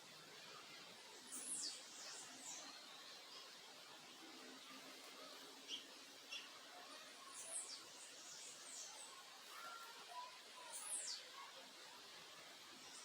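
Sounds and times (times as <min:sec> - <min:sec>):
small birds chirping: 0:05.3 - 0:06.6.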